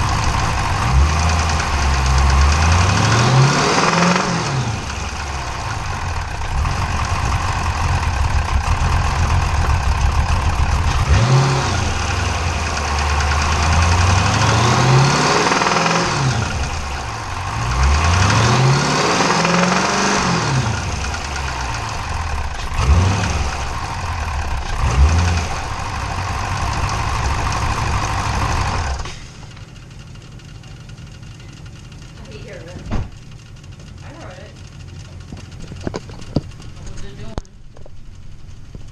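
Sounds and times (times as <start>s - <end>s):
engine revving: 0.0s - 29.3s
engine idling: 0.0s - 38.9s
engine knock: 4.9s - 18.5s, 20.7s - 38.9s.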